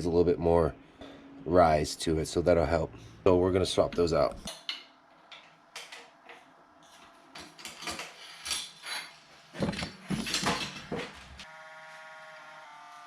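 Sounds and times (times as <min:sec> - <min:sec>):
metal tools clinking: 0:07.4 - 0:11.2.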